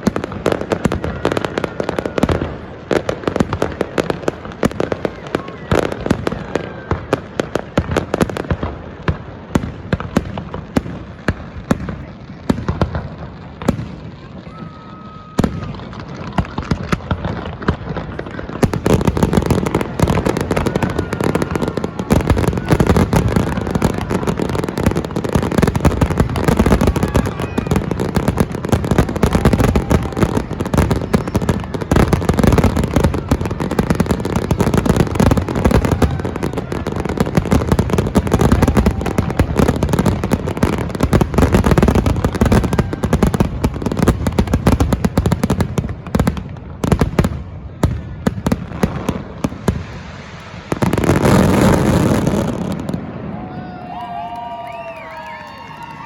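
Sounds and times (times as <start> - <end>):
fireworks bangs and crackles: 0.0 - 56.0.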